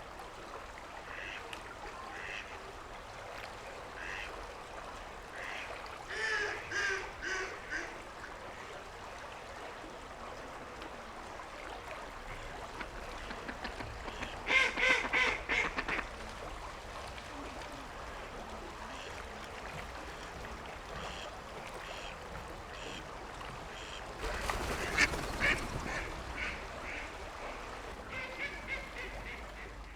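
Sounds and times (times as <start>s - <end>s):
ducks quacking: 2.1s - 2.5s, 12.3s - 16.2s, 20.9s - 22.2s, 22.8s - 23.1s, 23.7s - 29.9s.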